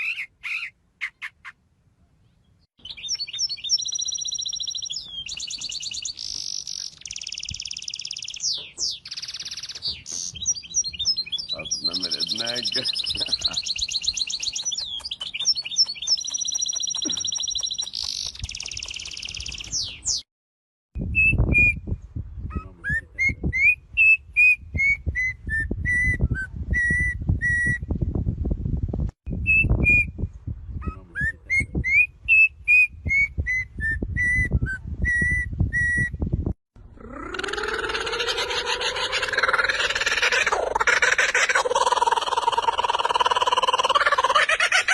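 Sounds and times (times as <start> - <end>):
songbird singing: 0.0 - 20.3.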